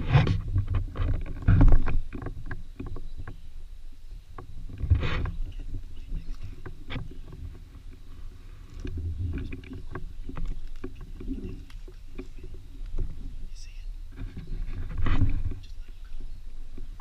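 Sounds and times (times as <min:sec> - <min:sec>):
soft knocks clicks and rustles: 0:08.7 - 0:13.4.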